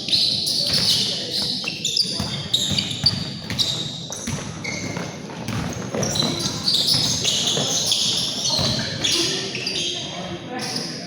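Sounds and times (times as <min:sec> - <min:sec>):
sneakers squeaking: 0:00.0 - 0:11.0
ball bouncing on court: 0:00.6 - 0:09.3.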